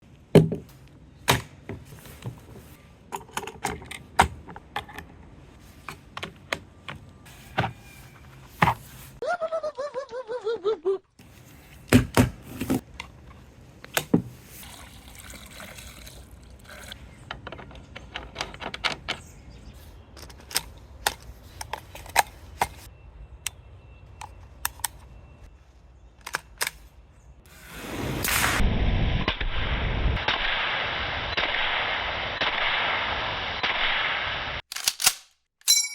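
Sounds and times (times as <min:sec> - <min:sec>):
gun parts clicking and snapping: 0:20.2 - 0:22.8, 0:26.2 - 0:26.8, 0:34.7 - 0:35.4.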